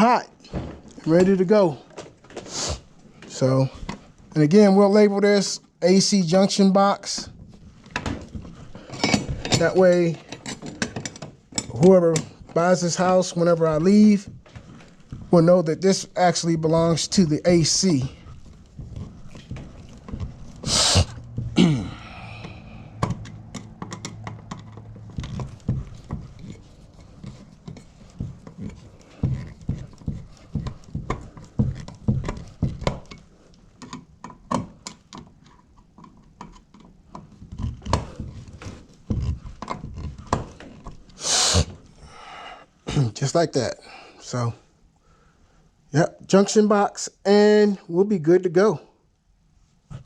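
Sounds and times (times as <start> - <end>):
clicks and knocks of hand work: 7.2 - 21.6, 22.4 - 42.0
steady low hum: 10.2 - 33.4.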